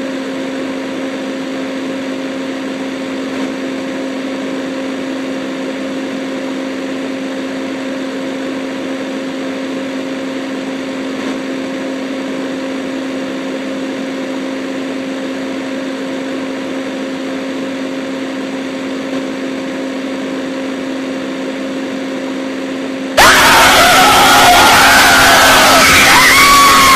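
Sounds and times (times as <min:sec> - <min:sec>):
harsh noise with sliding tones: 0:23.2 - 0:26.9.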